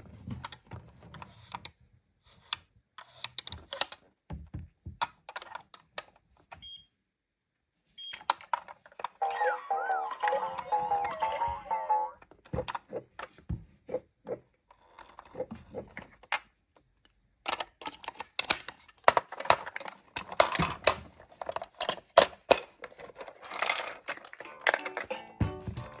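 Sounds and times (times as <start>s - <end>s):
toy cars clicking and clattering: 5.0s - 6.2s, 16.2s - 26.0s.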